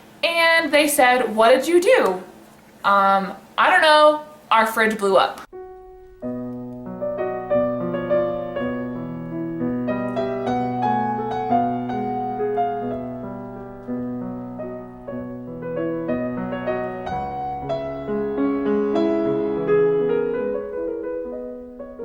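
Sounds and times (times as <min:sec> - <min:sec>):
slow piano music: 0:05.5 - 0:22.0.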